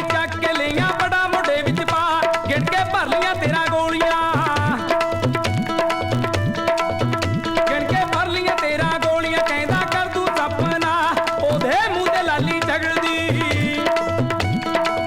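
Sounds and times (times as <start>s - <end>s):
hand drums: 0.0s - 15.0s
ornamented folk melody: 0.0s - 15.0s.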